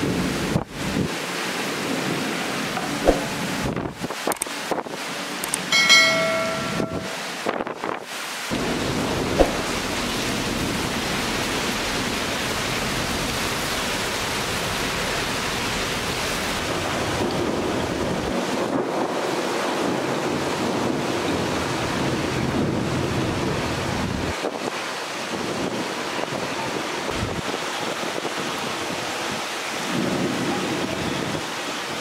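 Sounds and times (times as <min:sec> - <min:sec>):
heavy rain pouring: 0:00.0 - 0:32.0
sharp knock: 0:02.8 - 0:03.5, 0:09.4 - 0:09.8.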